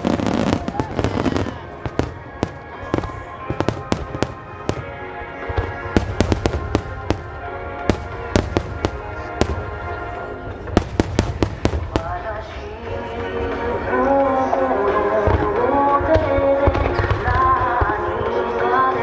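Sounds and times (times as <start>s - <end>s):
fireworks bursting: 0.0s - 13.0s
music with held notes: 0.0s - 19.0s.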